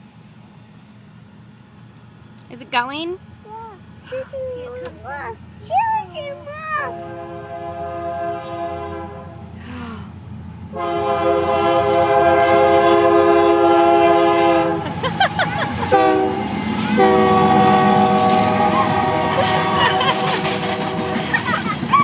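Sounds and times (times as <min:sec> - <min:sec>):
passing train rumble: 0:00.0 - 0:22.0
train horn blasts: 0:06.9 - 0:09.6, 0:10.7 - 0:15.0, 0:15.8 - 0:21.4.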